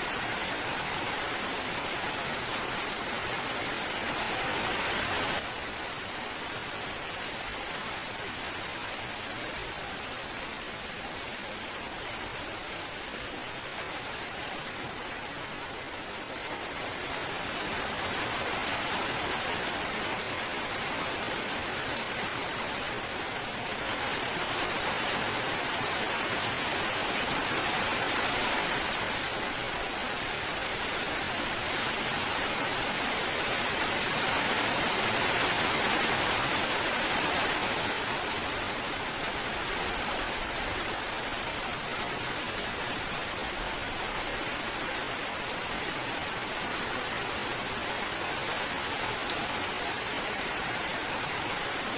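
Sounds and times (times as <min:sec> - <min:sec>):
steady rain falling: 0:00.0 - 0:51.9.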